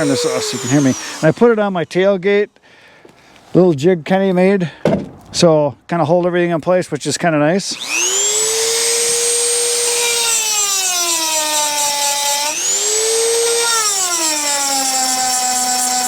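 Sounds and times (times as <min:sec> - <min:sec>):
sharpener motor whining and grinding: 0:00.0 - 0:01.8, 0:07.8 - 0:16.0.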